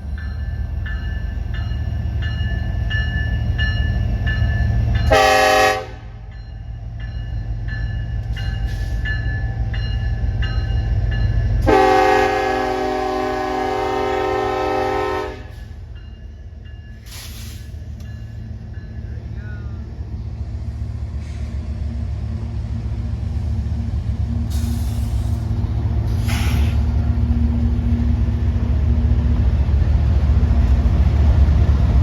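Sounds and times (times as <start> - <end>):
crossing bell dinging: 0.0 - 12.2
low rumble of locomotives: 0.0 - 32.0
locomotive horn blasts: 5.1 - 6.2, 11.6 - 15.6.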